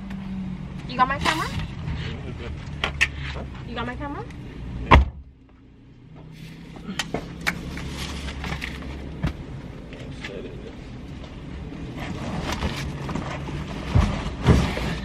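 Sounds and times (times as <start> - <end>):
items clattering into a car: 12.0 - 15.0.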